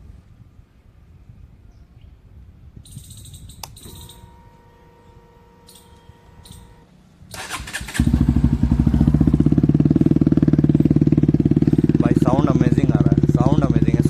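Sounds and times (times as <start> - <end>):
motorcycle engine idling: 3.1 - 14.0
engine starter cranking: 7.3 - 8.6.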